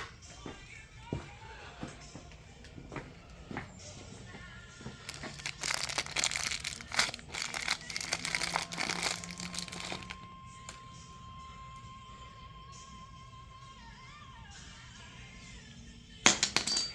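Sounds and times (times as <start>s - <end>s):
quiet background music: 0.0s - 16.9s
loud crinkling rustling: 5.0s - 10.2s.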